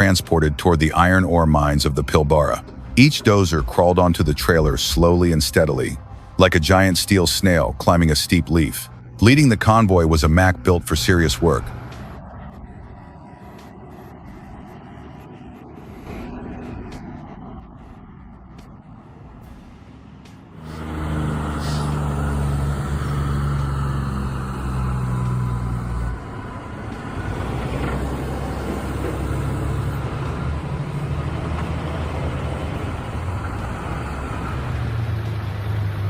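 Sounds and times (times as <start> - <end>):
heavy truck diesel engine: 0.0 - 36.0.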